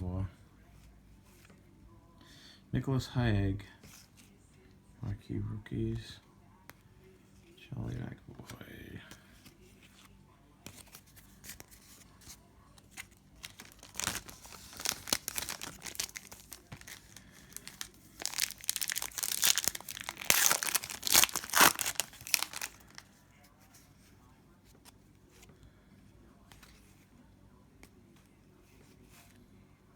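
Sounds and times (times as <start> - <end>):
card pack wrapper tearing and crinkling: 12.8 - 23.0.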